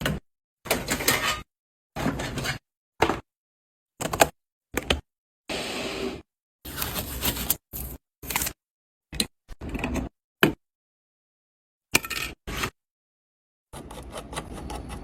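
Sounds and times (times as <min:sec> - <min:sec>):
computer parts handled: 0:06.7 - 0:08.6.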